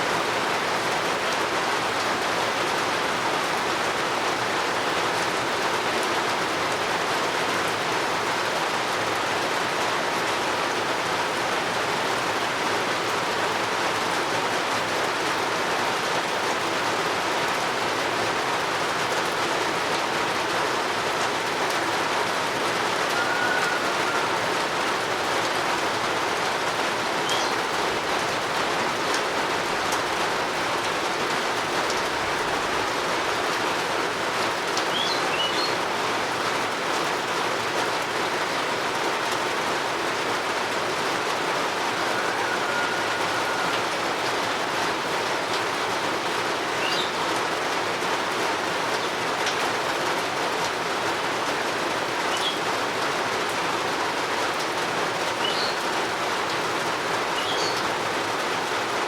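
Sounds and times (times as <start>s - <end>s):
steady rain falling: 0.0s - 59.0s
faint bird chirps: 55.4s - 55.8s, 57.4s - 57.8s.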